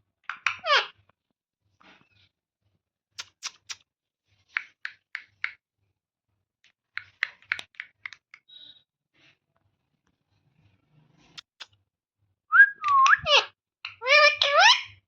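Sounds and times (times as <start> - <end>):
parrot clicking: 7.0 - 8.4, 11.4 - 11.7
parrot high chirp: 12.6 - 15.0.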